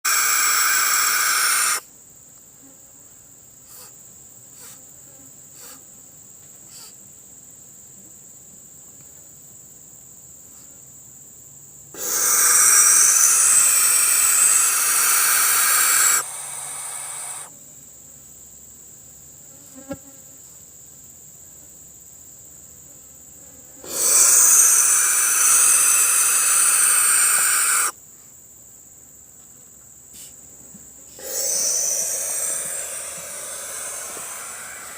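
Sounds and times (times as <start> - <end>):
owl hissing: 0.0 - 1.9, 3.7 - 4.0, 4.6 - 4.8, 5.6 - 5.8, 6.7 - 7.0, 11.9 - 17.5, 23.8 - 28.0, 31.1 - 34.9
high thin insect-like tone: 0.1 - 34.9.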